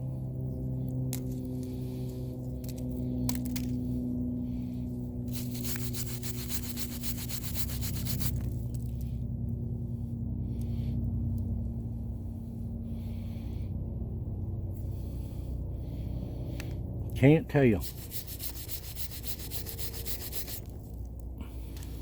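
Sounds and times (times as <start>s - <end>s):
low steady hum: 0.0s - 22.0s
scrubbing a metal knife: 5.3s - 8.5s, 17.8s - 20.7s.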